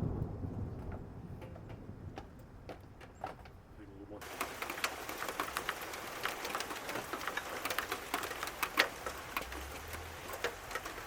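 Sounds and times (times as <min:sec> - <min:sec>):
rain falling: 0:00.0 - 0:11.0
drops ticking on hard surface: 0:04.2 - 0:11.0.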